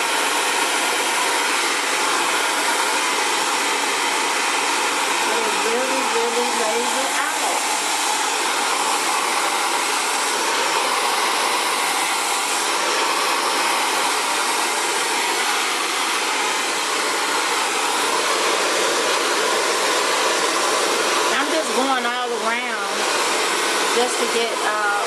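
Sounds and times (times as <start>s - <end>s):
hair dryer blowing: 0.0s - 25.0s.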